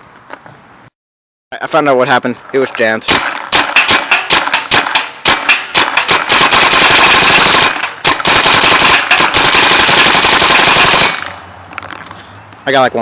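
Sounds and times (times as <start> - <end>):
paintball marker firing: 3.0 - 11.4.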